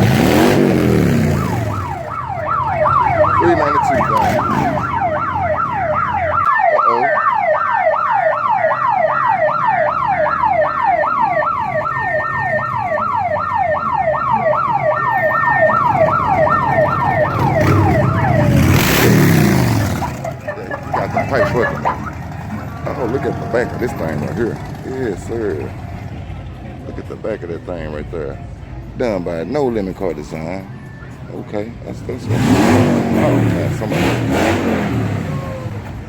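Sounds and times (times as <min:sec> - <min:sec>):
car engine revving: 0:00.0 - 0:06.4, 0:15.4 - 0:26.4, 0:31.9 - 0:36.0
electronic siren yelping: 0:00.0 - 0:24.4.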